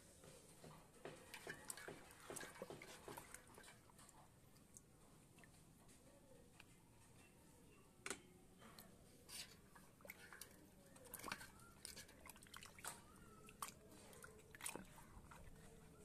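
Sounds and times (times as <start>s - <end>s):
wet squelches in water: 9.3s - 16.0s.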